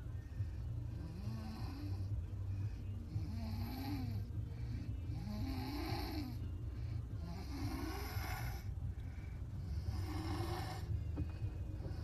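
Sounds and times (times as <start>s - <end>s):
steady low rumble: 0.0s - 12.0s
woman snoring: 1.0s - 2.1s, 3.1s - 4.3s, 5.1s - 6.5s, 7.2s - 8.7s, 9.7s - 11.0s.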